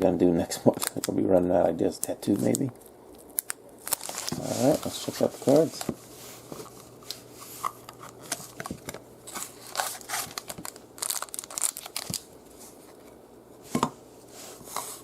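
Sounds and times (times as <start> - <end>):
plastic wrapping torn and crinkled: 0.7 - 1.2, 2.3 - 5.9, 7.6 - 12.3.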